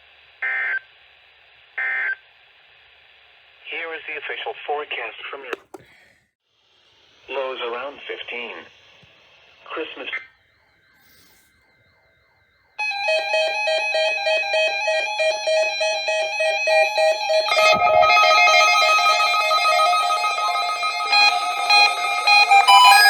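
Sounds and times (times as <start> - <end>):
steady alarm tone: 10.4 - 23.0
rapid electronic beeping: 17.2 - 23.0.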